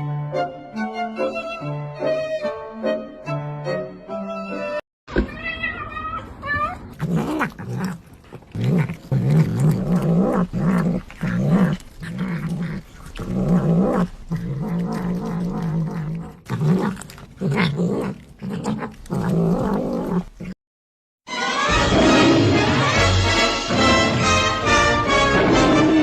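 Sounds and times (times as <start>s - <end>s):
cat growling: 6.4s - 20.6s.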